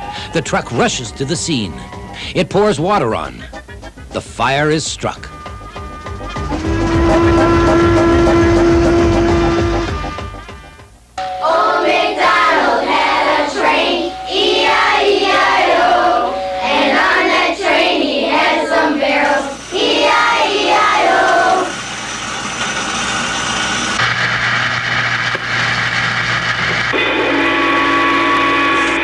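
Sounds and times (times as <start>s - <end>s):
children singing over music: 11.2s - 21.8s.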